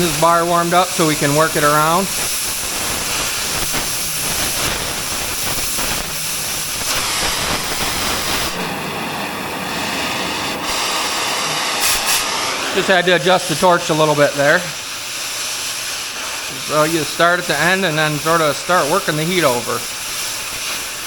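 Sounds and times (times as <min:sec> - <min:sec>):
gas torch flame hissing: 0:00.0 - 0:21.0.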